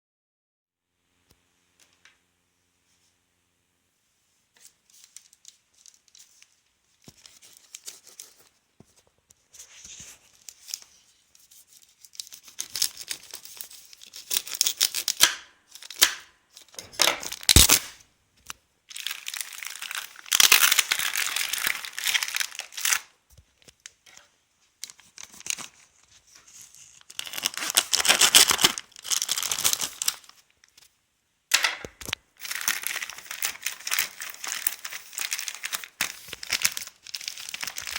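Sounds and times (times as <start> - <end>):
packaging tearing and crinkling: 12.0 - 18.0, 18.9 - 23.1, 24.8 - 25.9, 26.5 - 30.9, 31.5 - 37.9.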